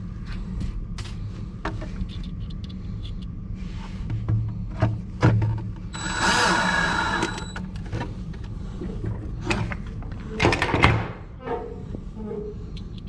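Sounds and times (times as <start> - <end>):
power drill driving screws: 6.0 - 7.6.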